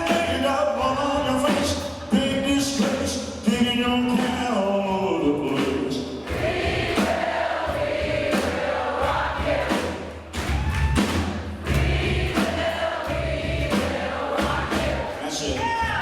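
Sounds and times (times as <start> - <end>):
drums: 0.0 - 16.0
voices singing in harmony: 5.3 - 16.0.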